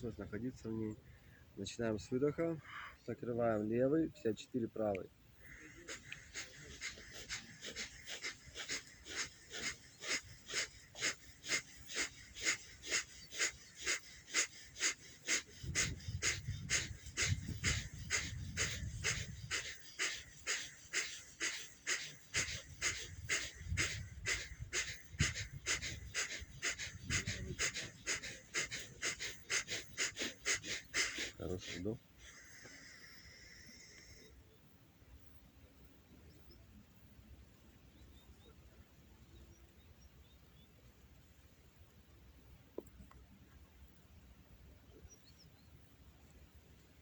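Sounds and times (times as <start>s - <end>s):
forceful breaths through nostril: 5.4s - 34.3s.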